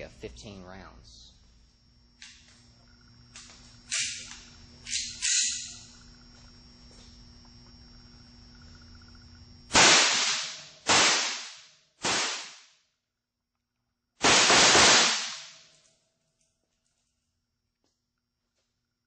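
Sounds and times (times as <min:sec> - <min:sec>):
blank pistol shots: 0:09.7 - 0:12.6, 0:14.2 - 0:15.6.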